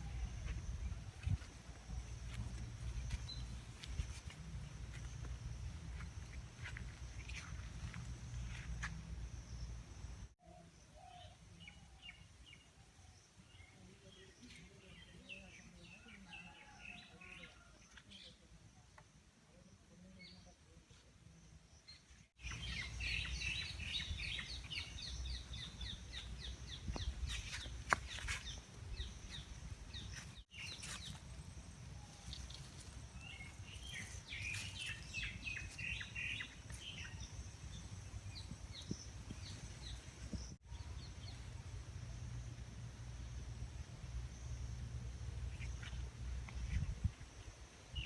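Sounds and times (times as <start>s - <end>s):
birds chirping: 21.8s - 31.2s, 31.9s - 41.5s.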